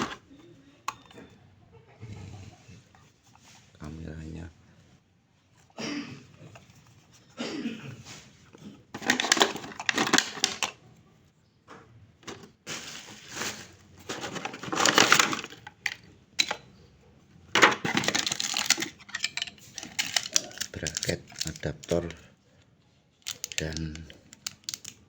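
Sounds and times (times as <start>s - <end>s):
packaging crinkling and rustling: 0.0s - 0.2s, 8.9s - 10.8s, 12.2s - 16.6s, 17.5s - 22.2s, 23.2s - 25.0s.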